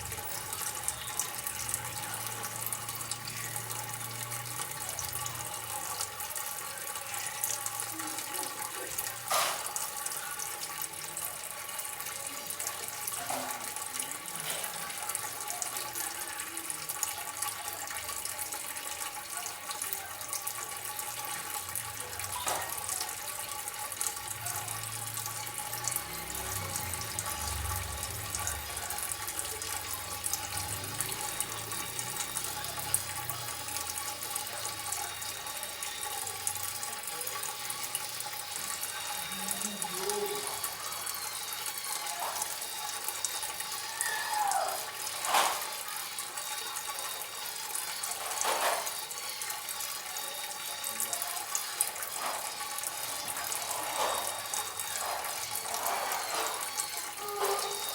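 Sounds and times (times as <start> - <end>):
water trickling and splashing: 0.0 - 57.9
falling whistle: 43.8 - 44.9.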